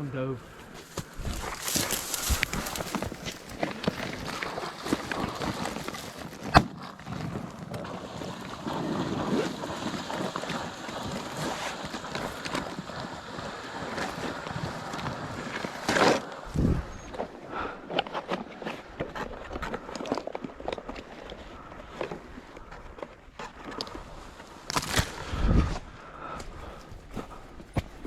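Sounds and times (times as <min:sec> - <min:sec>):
rustling movement: 0:00.4 - 0:07.7
water noise: 0:00.6 - 0:23.3
wind buffeting microphone: 0:01.0 - 0:03.5, 0:16.4 - 0:17.2, 0:25.1 - 0:27.3.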